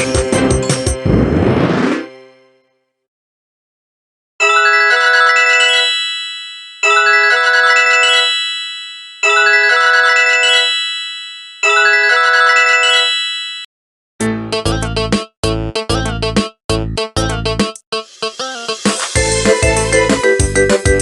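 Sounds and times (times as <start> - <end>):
bell-like ringtone: 4.4 - 13.7
ringtone with heavy bass: 4.4 - 13.7.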